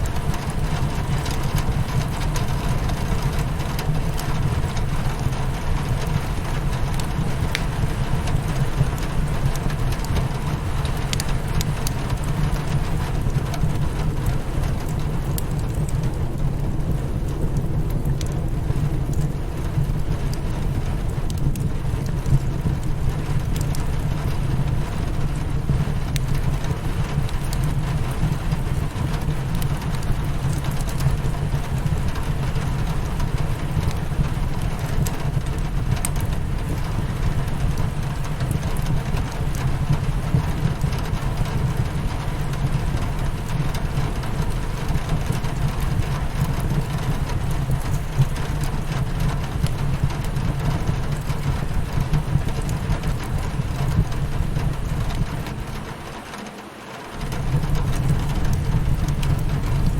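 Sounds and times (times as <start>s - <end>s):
fireplace crackling: 0.0s - 56.3s, 57.1s - 59.9s
rain on a window: 0.0s - 59.9s.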